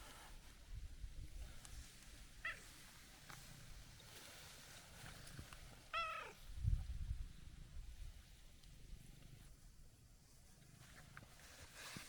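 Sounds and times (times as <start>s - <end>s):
cat meowing: 2.4s - 2.6s, 5.9s - 6.4s.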